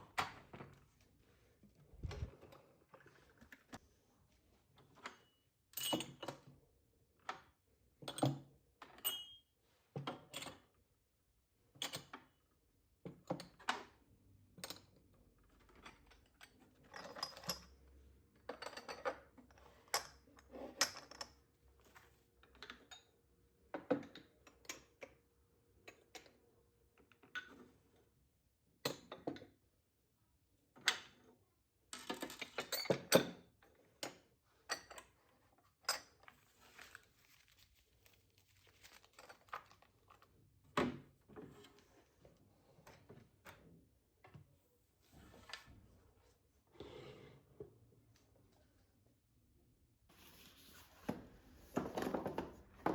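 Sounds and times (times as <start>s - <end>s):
rustling: 36.4s - 39.8s
household items clicking and knocking: 51.1s - 52.9s.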